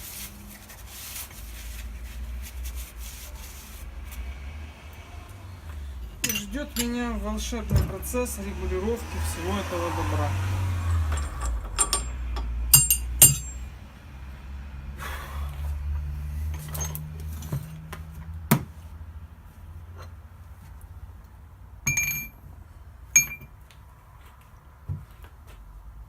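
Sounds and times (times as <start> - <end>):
steel parts clinking: 6.2 - 7.2, 10.9 - 13.7, 21.9 - 22.4, 23.2 - 23.5.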